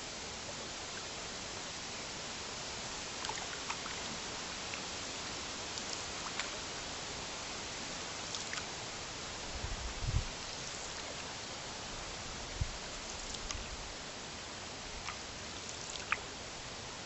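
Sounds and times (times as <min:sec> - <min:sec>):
stream water hissing: 0:00.0 - 0:17.0
small drips and ticks: 0:03.0 - 0:06.8, 0:07.6 - 0:09.5, 0:12.6 - 0:13.8, 0:15.0 - 0:16.3.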